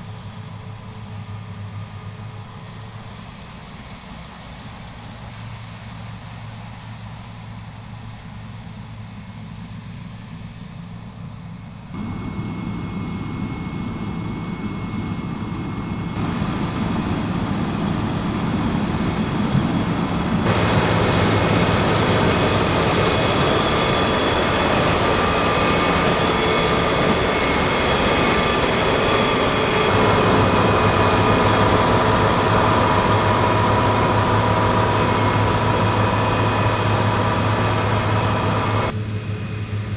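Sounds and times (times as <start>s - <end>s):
combine harvester engine drone: 12.0s - 39.9s
machinery whine: 12.0s - 39.9s.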